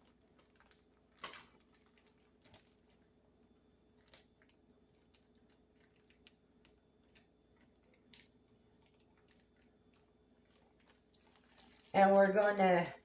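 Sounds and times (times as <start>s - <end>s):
plastic zip bag crinkling: 0.0s - 3.1s.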